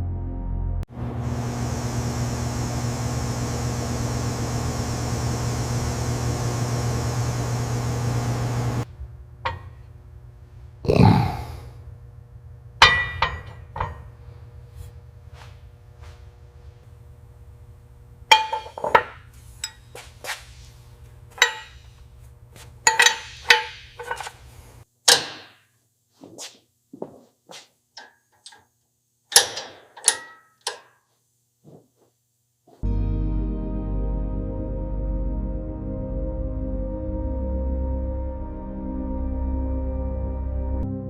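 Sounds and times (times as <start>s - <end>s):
steady low hum: 0.9s - 24.9s
tools knocking and clinking: 9.4s - 9.8s, 12.8s - 14.1s, 18.3s - 19.8s, 21.4s - 21.9s, 22.8s - 24.3s, 28.0s - 28.7s, 29.3s - 31.0s.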